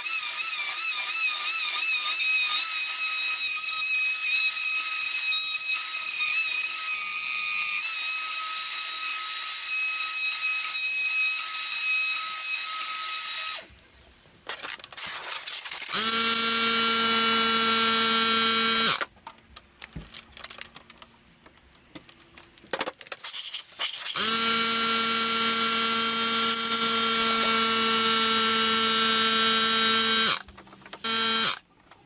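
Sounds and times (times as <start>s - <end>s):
power tool motor running: 15.9s - 19.0s, 24.2s - 31.6s.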